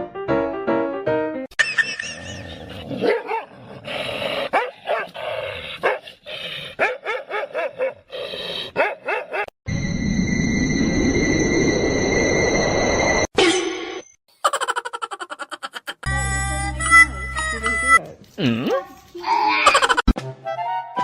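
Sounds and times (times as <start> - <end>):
dog barking and yipping: 1.6 - 3.5, 4.5 - 5.2, 5.8 - 6.0, 6.8 - 8.1, 8.7 - 9.5.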